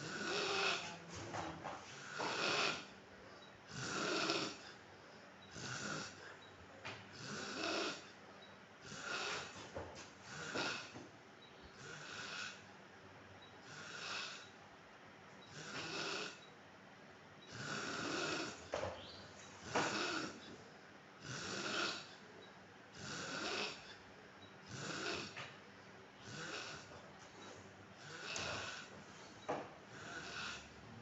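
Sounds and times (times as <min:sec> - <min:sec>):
man snoring: 0:00.0 - 0:00.9, 0:01.9 - 0:02.9, 0:03.7 - 0:04.8, 0:05.5 - 0:06.3, 0:07.1 - 0:08.1, 0:08.8 - 0:09.6, 0:10.3 - 0:11.0, 0:11.8 - 0:12.6, 0:13.6 - 0:14.6, 0:15.5 - 0:16.4, 0:17.5 - 0:18.7, 0:19.6 - 0:20.6, 0:21.2 - 0:22.2, 0:22.9 - 0:24.0, 0:24.6 - 0:25.4, 0:26.2 - 0:27.0, 0:28.0 - 0:29.0, 0:29.9 - 0:30.8.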